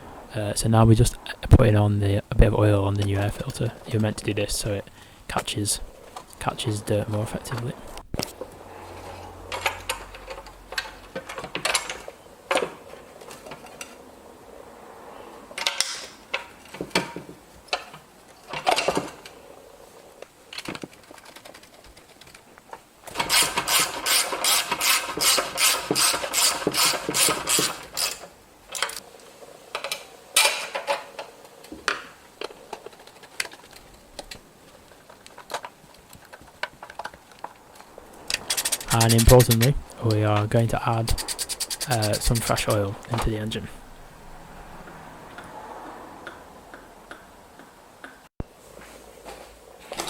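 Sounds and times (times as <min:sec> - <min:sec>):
ratchet tool clicking: 0:38.3 - 0:39.2, 0:41.2 - 0:42.2.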